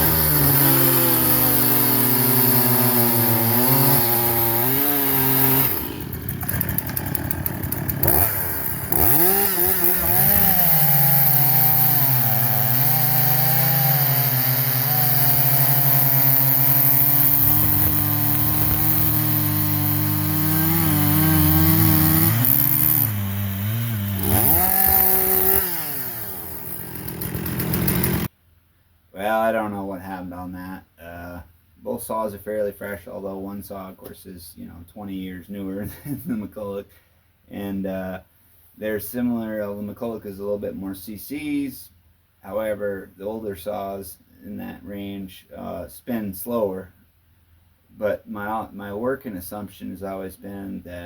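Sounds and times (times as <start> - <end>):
chainsaw cutting wood: 0.0 - 28.3.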